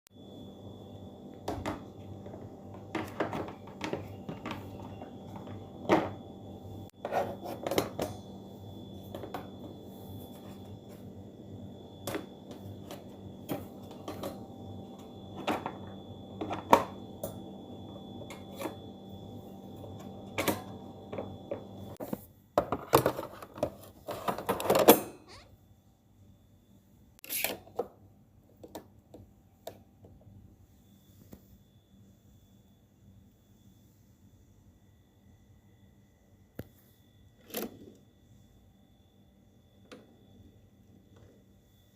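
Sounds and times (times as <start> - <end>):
coffee machine humming: 0.1 - 22.1.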